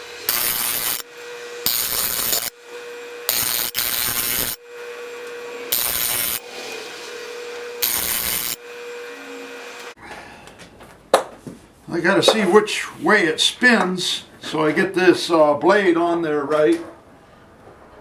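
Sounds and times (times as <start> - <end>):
rasping strokes: 0.0 - 10.0.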